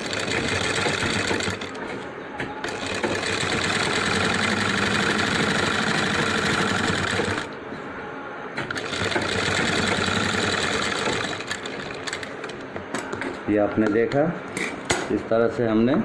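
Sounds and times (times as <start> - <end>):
sewing machine running: 0.0 - 2.0, 2.6 - 7.5, 8.7 - 12.4.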